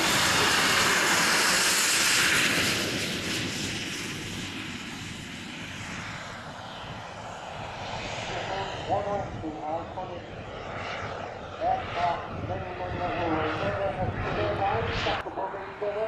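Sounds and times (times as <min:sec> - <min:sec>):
model jet turbine rushing: 0:00.0 - 0:16.0.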